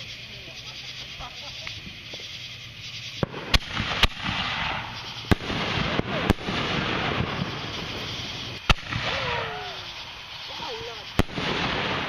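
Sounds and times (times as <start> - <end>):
firework bangs: 0.0 - 12.0
firework crackling: 0.0 - 12.0.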